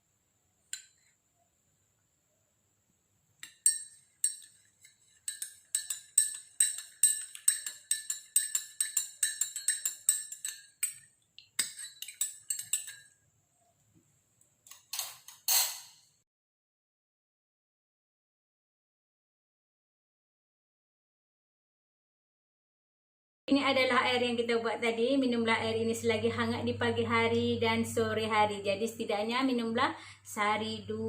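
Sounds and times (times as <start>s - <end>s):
spoon clinking against glass: 3.4s - 13.2s
spoon scraping glass: 3.4s - 13.2s, 15.0s - 16.0s.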